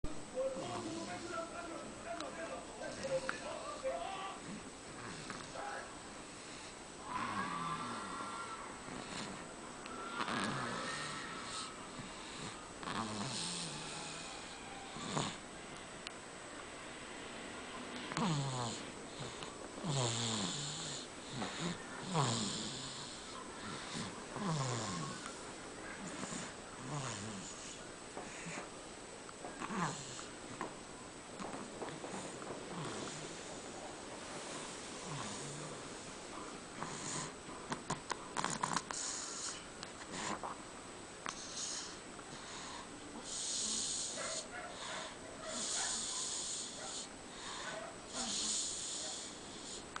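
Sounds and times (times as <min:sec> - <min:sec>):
person snoring loudly: 0:07.0 - 0:09.4, 0:10.1 - 0:15.4, 0:18.1 - 0:25.3.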